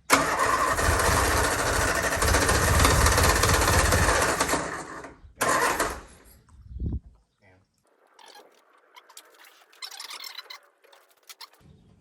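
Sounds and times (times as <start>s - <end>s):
car engine turning over: 0.0s - 6.2s.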